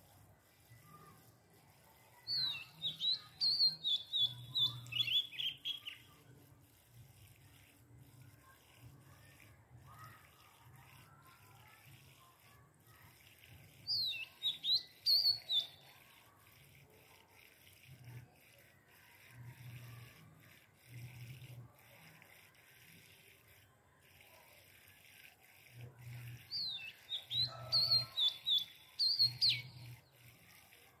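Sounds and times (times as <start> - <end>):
bird chirping and whistling: 2.3 - 6.0, 13.9 - 15.8, 26.5 - 29.8.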